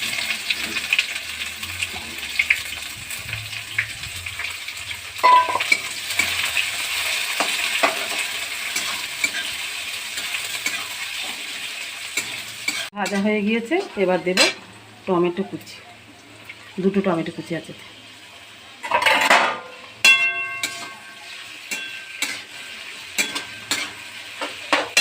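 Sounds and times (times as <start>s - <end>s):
onions sizzling in oil: 0.0s - 25.0s
metallic knock with ring: 5.2s - 5.7s
stirring scrapes against pan: 7.4s - 14.6s, 20.6s - 25.0s.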